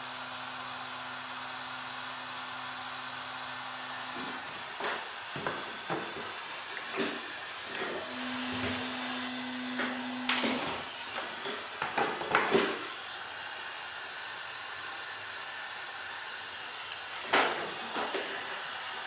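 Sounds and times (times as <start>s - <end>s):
heat gun blowing: 3.8s - 19.0s.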